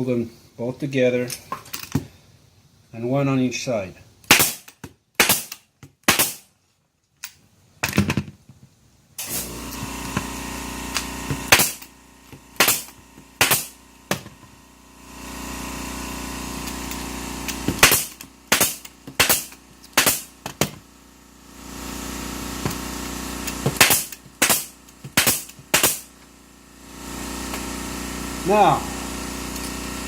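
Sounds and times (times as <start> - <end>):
staple gun firing: 4.3 - 6.4, 11.5 - 11.9, 12.6 - 14.2, 17.8 - 20.6, 23.8 - 26.1
steady hum: 9.2 - 30.0.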